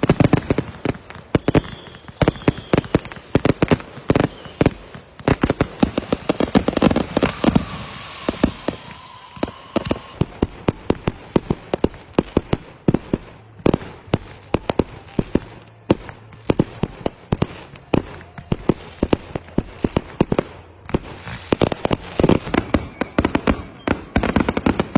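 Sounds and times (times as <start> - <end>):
fireworks bangs and pops: 0.0 - 24.9
faint thin whistle: 1.3 - 3.2, 4.1 - 4.8, 6.1 - 10.4, 21.7 - 24.9.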